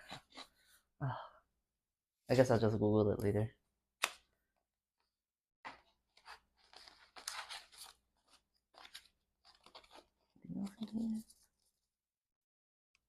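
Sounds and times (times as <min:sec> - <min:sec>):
paper rustling and crinkling: 0:05.7 - 0:11.9.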